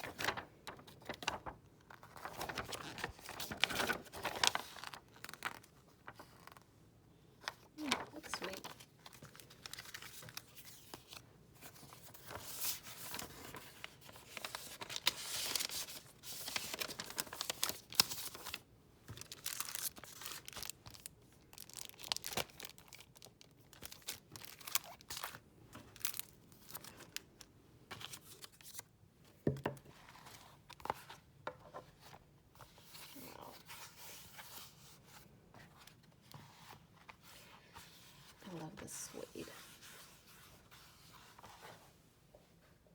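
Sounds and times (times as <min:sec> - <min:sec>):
packaging tearing and crinkling: 0:19.2 - 0:25.4.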